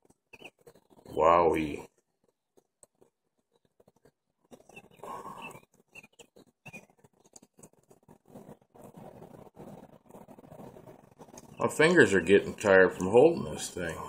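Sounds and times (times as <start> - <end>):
hands rustling and rubbing: 2.0 - 12.2.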